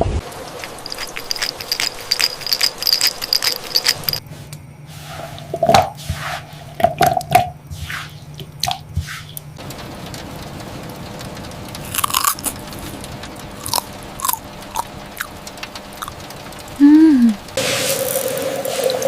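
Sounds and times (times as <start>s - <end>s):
small crackling clicks: 8.4s - 16.8s.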